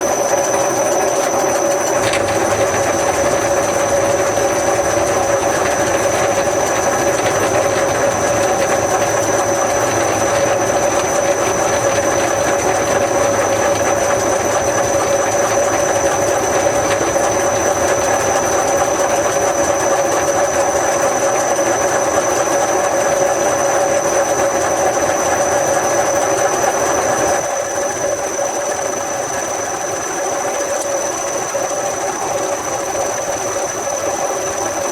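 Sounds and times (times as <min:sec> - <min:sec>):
machine humming and whining: 0:00.0 - 0:34.9.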